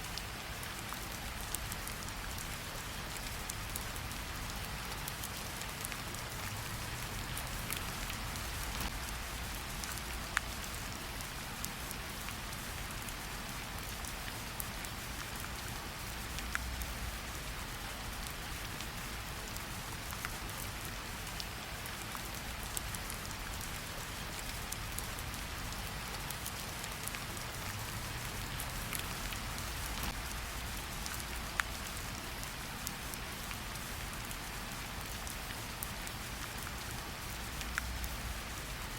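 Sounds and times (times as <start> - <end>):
steady rainfall hiss: 0.0 - 38.9
raindrops ticking: 0.2 - 11.3, 24.3 - 38.8.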